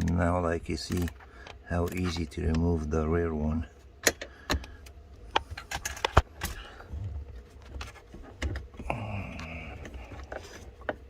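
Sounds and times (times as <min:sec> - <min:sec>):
tool and plastic parts rattling: 0:00.0 - 0:02.8, 0:05.4 - 0:11.0.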